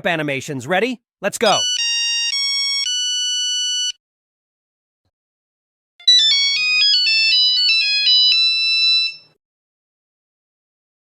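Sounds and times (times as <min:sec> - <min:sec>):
monophonic phone ringtone: 0:01.6 - 0:04.0, 0:06.0 - 0:09.4.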